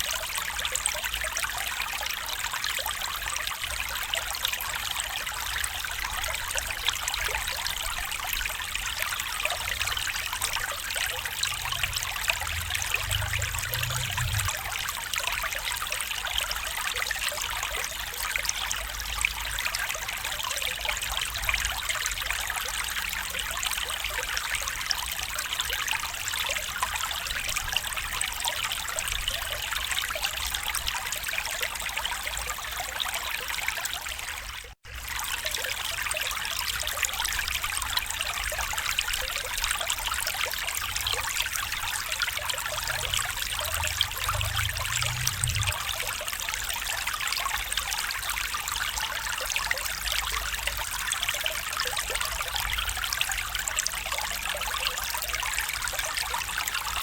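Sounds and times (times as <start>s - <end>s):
stream babbling over rocks: 0.0s - 57.0s
faint low rumble: 9.6s - 15.2s, 41.0s - 46.6s.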